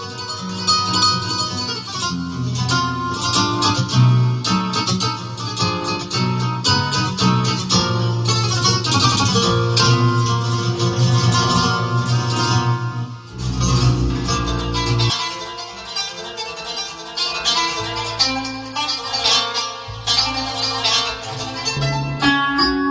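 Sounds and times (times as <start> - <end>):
plucked guitar-like keyboard melody: 0.0 - 22.9
keyboard bass line: 8.0 - 15.1.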